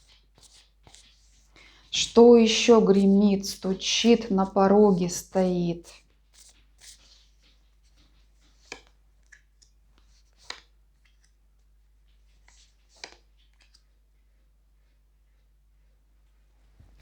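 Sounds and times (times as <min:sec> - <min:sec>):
card ticks and rustles: 0:00.0 - 0:14.0
low steady hum: 0:00.9 - 0:06.1.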